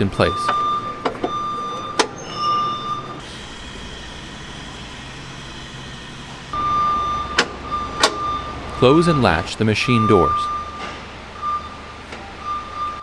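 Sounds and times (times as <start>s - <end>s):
high electronic beep: 0.0s - 3.0s, 6.6s - 11.8s
stump grinder idling: 3.2s - 6.6s.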